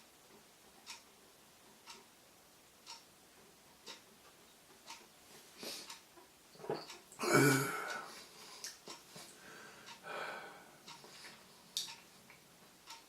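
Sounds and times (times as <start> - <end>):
man breathing out hard: 9.4 - 10.7.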